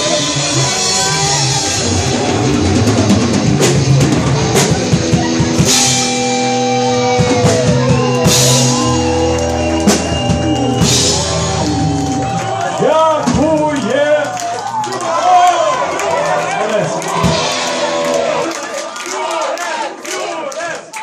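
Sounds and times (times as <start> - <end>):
electric guitar sustained notes: 0.0 - 12.8, 17.0 - 18.6
rock band playing: 0.0 - 18.8.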